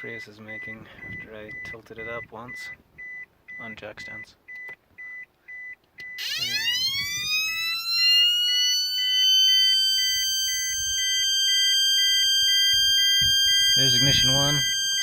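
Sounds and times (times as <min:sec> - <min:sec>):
electronic siren-like whine: 0:06.2 - 0:15.0
short repeating beep: 0:10.0 - 0:15.0.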